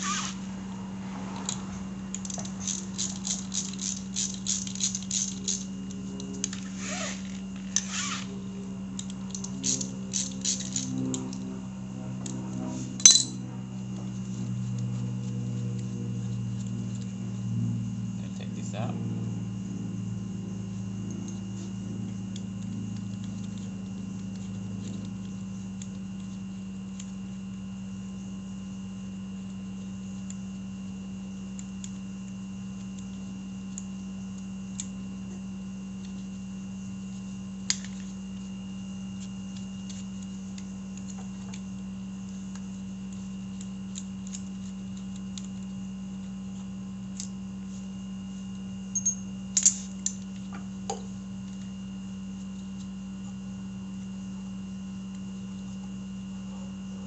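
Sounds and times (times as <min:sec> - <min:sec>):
low hum: 0:00.0 - 0:27.4.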